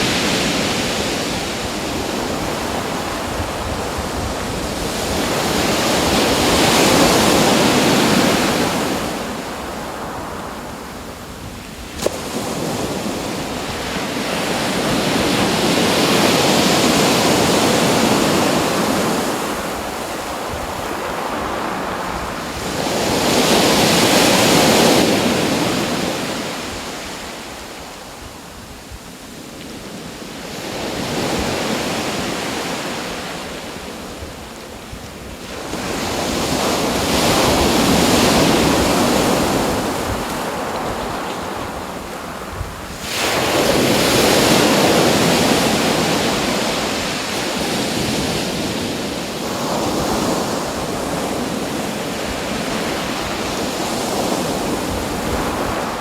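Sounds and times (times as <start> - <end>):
waves breaking: 35.4 - 56.0.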